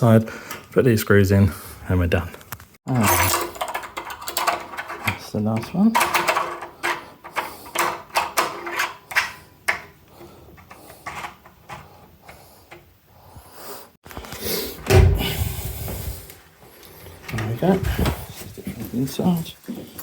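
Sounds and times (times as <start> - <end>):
metallic clicks of door hardware: 3.0 - 9.9.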